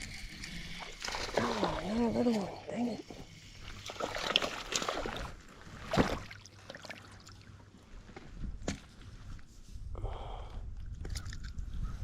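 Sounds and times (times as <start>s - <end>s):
water splashing: 0.0s - 2.7s, 3.6s - 7.5s.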